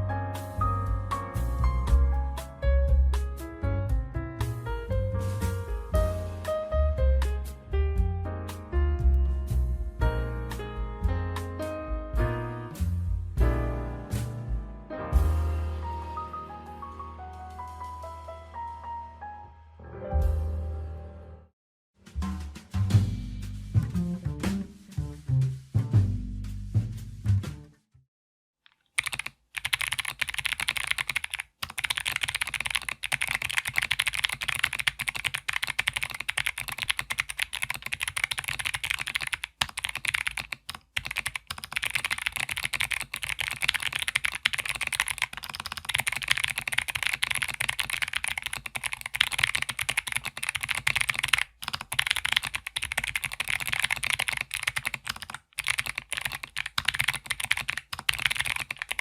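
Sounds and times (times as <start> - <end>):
fast clicky keyboard typing: 28.7 - 59.0.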